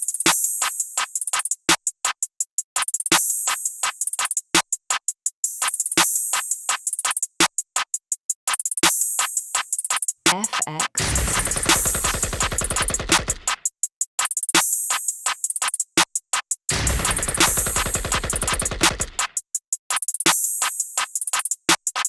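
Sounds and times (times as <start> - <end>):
snare and clap hits: 11.0 - 13.6, 16.7 - 19.3.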